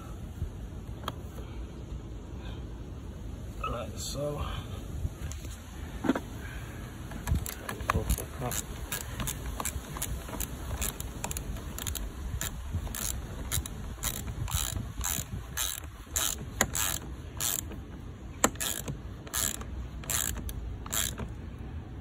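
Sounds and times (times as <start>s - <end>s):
socket ratchet clicking: 7.2s - 21.4s.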